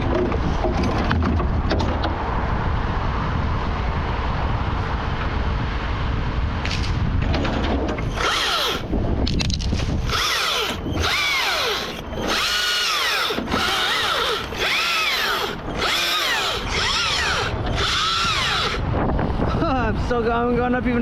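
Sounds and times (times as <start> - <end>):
battery chainsaw revving: 8.2 - 8.9, 10.0 - 18.8.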